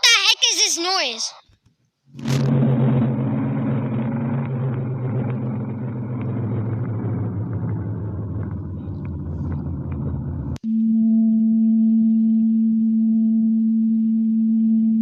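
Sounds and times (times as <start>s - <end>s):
low droning rumble: 2.1s - 10.6s
low hums: 2.1s - 15.0s
rough noisy haze: 2.2s - 10.6s.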